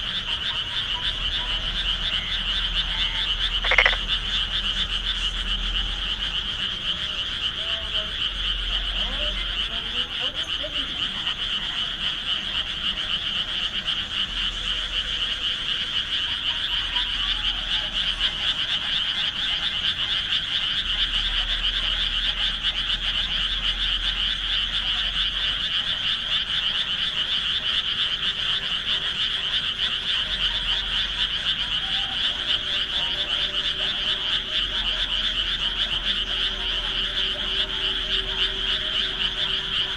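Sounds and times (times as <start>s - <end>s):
chorus of frogs croaking: 0.0s - 39.9s.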